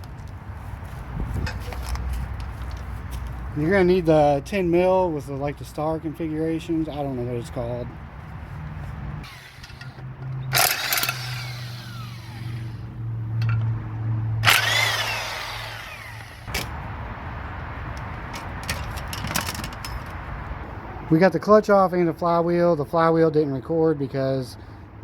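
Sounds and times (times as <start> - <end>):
power tool whirring: 9.2 - 13.6, 14.4 - 16.7.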